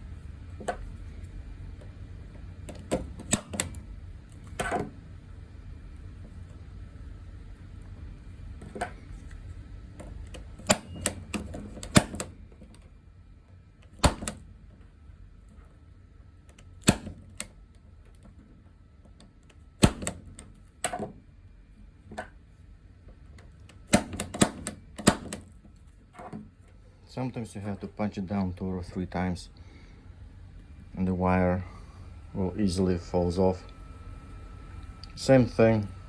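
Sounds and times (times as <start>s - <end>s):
punch-down tool snapping: 2.7s - 4.9s, 10.0s - 12.8s, 13.8s - 14.4s, 16.5s - 17.6s, 19.8s - 21.1s, 23.7s - 25.5s.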